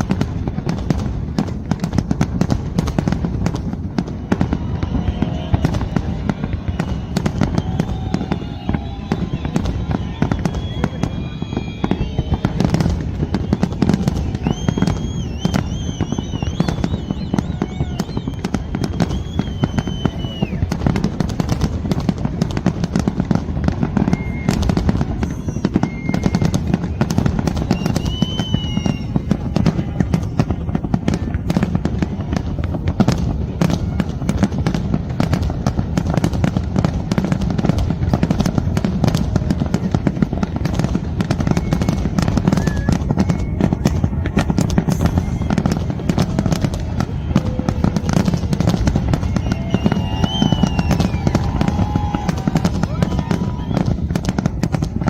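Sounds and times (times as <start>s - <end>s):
fireworks crackling and popping: 0.0s - 55.0s
high wavering whistles: 6.4s - 20.6s, 24.0s - 29.8s, 41.2s - 46.7s, 48.0s - 51.6s.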